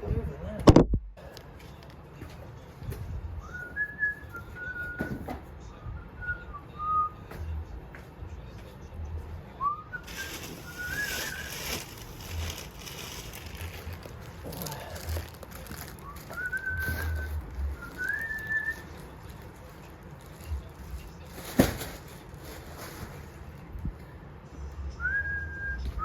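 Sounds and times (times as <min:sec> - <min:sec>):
person whistling a tune: 0:03.4 - 0:07.3, 0:16.0 - 0:18.9, 0:25.0 - 0:26.0.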